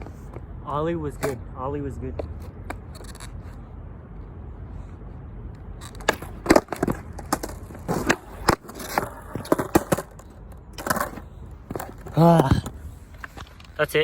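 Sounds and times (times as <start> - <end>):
skateboard clacking on concrete: 5.8 - 13.5.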